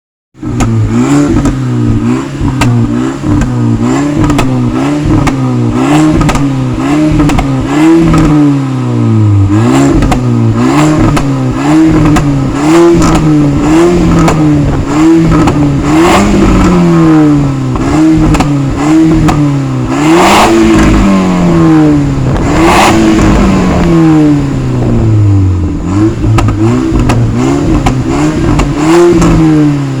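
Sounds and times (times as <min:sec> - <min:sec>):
exhaust pops and crackles: 0:00.4 - 0:08.5, 0:09.9 - 0:21.0, 0:25.7 - 0:30.0
car exhaust revving: 0:00.4 - 0:30.0.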